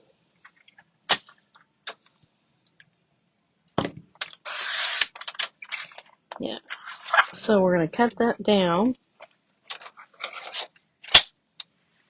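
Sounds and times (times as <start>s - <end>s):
rasping paper cut: 4.4s - 5.1s.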